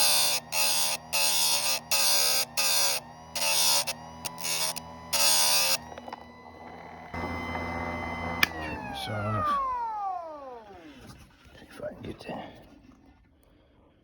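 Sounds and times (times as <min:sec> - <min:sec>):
rasping grinding bursts: 0:00.0 - 0:08.4
grinder motor humming: 0:00.0 - 0:11.2.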